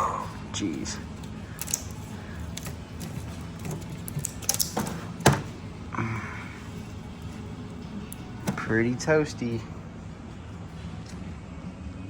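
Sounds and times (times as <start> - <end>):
metal tools clicking and knocking: 1.6 - 5.5.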